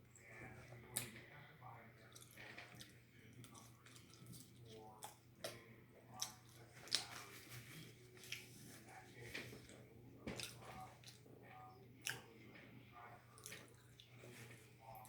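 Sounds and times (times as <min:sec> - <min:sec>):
wet chewing smacks: 0:02.1 - 0:11.3, 0:12.0 - 0:12.4, 0:13.3 - 0:15.0.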